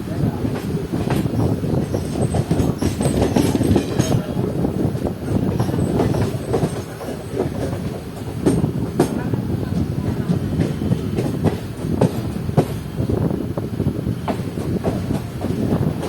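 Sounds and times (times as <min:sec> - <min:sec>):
train wheels rumbling on rails: 0:00.0 - 0:16.0.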